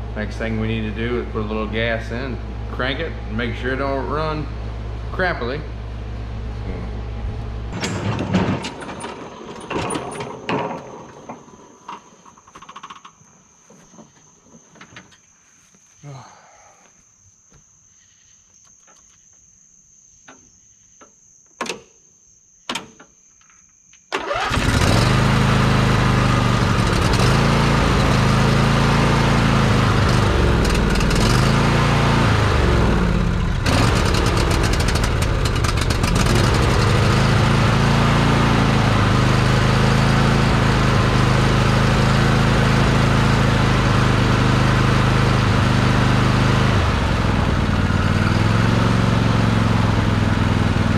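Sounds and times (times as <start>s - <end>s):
mower engine cranking and running: 7.7s - 13.2s, 24.1s - 50.9s.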